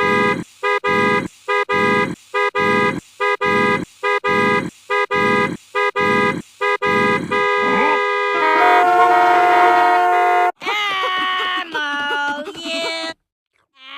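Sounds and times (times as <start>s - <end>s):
horn honk: 0.0s - 10.6s.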